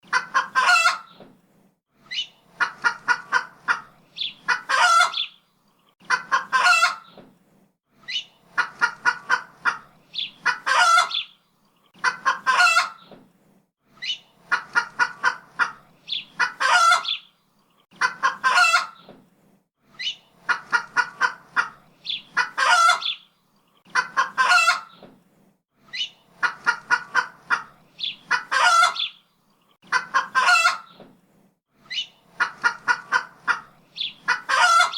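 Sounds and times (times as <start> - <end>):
chicken clucking: 0.0 - 1.2, 2.1 - 5.4, 6.0 - 7.2, 8.1 - 11.3, 11.9 - 13.2, 14.0 - 17.3, 17.9 - 19.2, 20.0 - 25.0, 25.9 - 29.2, 29.8 - 31.1, 31.9 - 34.9.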